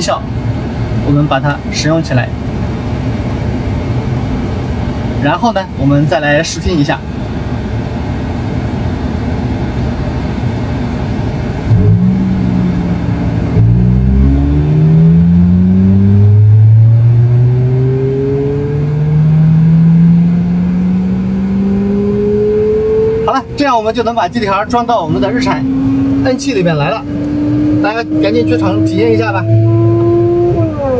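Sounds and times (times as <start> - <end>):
synthesized car engine revving: 11.6 - 30.9.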